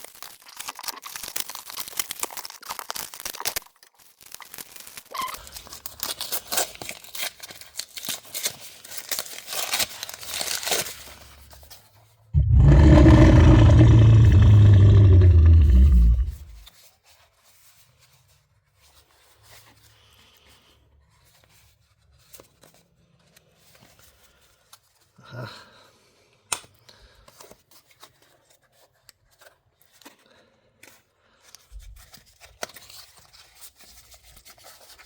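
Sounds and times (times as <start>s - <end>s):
packaging rustling: 0.0s - 11.9s.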